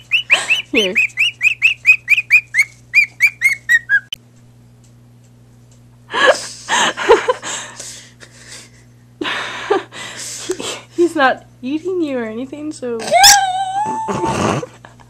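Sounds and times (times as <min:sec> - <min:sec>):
bird chirping whistled notes: 0:00.0 - 0:04.2.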